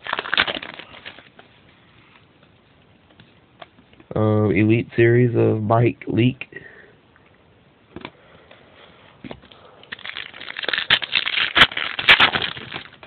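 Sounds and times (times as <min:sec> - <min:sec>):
wrapper crinkling and card snaps: 0:00.0 - 0:01.5, 0:09.3 - 0:13.0.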